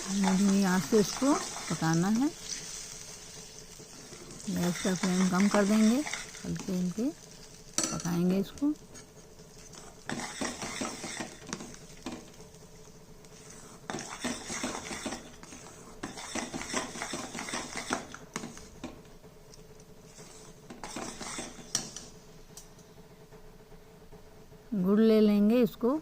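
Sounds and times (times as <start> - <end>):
metal spatula scraping a pan: 0.0 - 6.6, 9.7 - 11.7, 13.4 - 18.6, 20.1 - 22.0.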